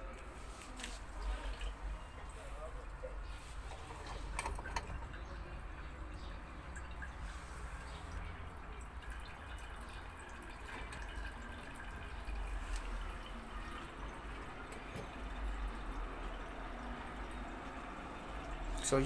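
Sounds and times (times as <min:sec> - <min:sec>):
washing machine motor hum: 0:00.0 - 0:19.0
water trickling and splashing: 0:00.0 - 0:19.0.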